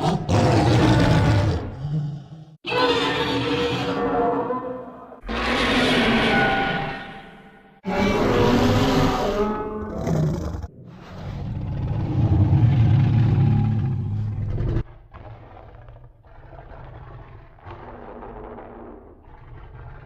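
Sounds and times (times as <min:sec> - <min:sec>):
deep monster growl: 0:00.0 - 0:04.6, 0:08.2 - 0:20.0
low rumbling growls: 0:10.3 - 0:20.0.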